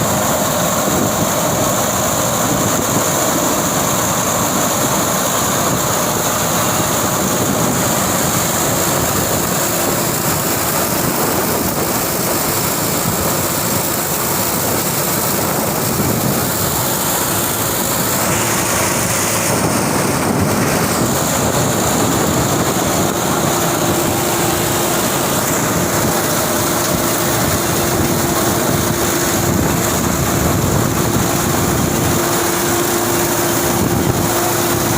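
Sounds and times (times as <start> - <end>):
high mechanical whine: 0.0 - 34.9
straw chopper machine din: 0.0 - 34.9
tractor engine: 0.0 - 34.9.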